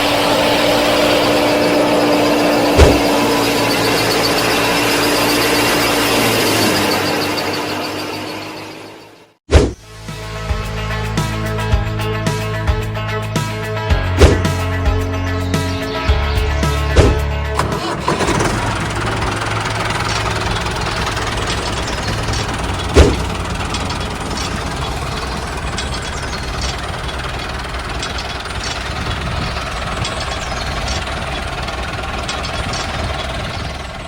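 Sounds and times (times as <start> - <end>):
sharp knock: 2.8 - 3.1, 14.2 - 14.6, 17.0 - 17.2
model machine mechanical clatter: 17.6 - 34.0.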